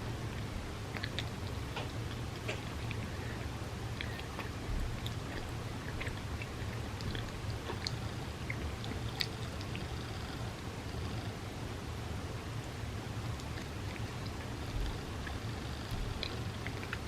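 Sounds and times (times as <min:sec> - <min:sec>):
steady low hum: 0:00.0 - 0:17.0
person chewing: 0:00.2 - 0:11.3, 0:13.4 - 0:17.0.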